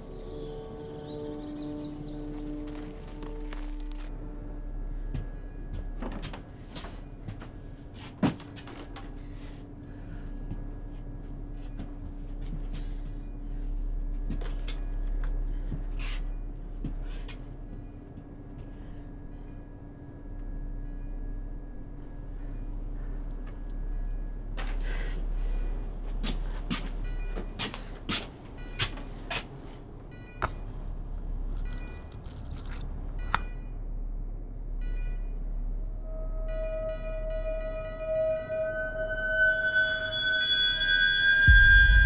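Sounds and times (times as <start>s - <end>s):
low steady hum: 30.4s - 33.5s.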